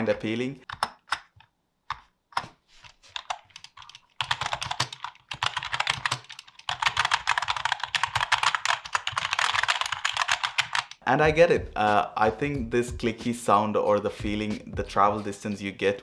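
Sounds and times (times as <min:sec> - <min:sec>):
mechanical keyboard typing: 0:03.1 - 0:11.0.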